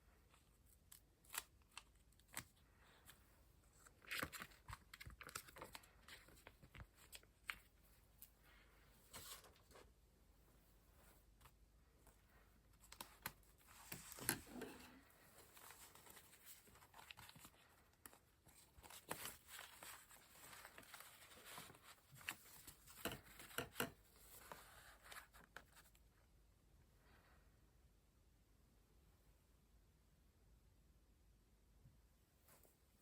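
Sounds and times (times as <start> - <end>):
paper rustling: 0.3 - 10.0, 10.9 - 26.0.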